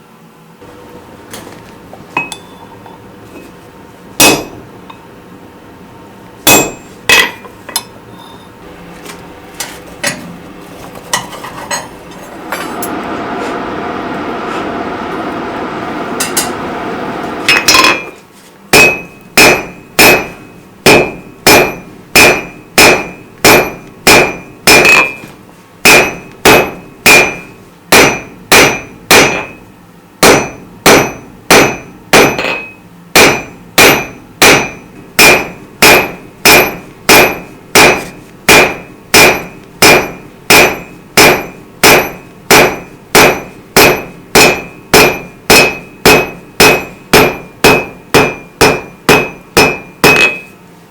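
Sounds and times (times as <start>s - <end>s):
hammer ringing on anvil: 2.2s - 2.7s, 4.2s - 4.6s, 6.4s - 8.4s, 17.5s - 50.6s
steady noise: 12.3s - 25.1s.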